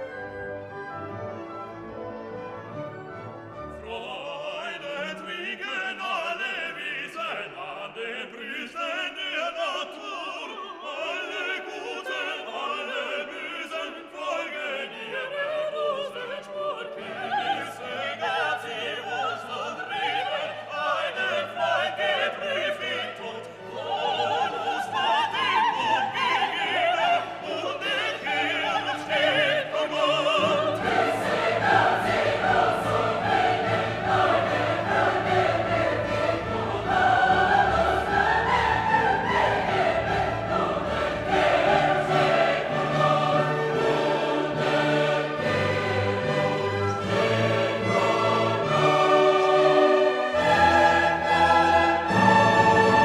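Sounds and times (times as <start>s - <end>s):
orchestra playing: 0.0s - 5.3s, 28.6s - 53.0s
operatic singing: 3.5s - 53.0s.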